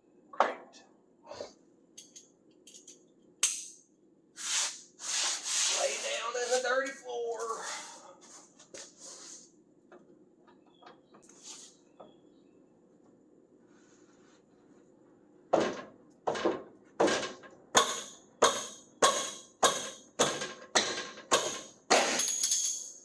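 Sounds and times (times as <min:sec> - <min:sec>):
hammer striking metal: 0:17.8 - 0:22.4.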